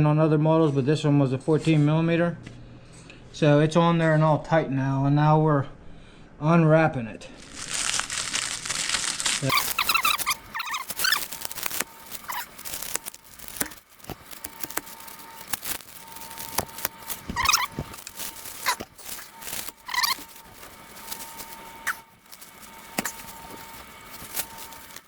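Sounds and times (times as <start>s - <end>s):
plastic wrapping tearing and crinkling: 7.4s - 25.0s
short squeals of peeling wrap: 7.4s - 25.0s.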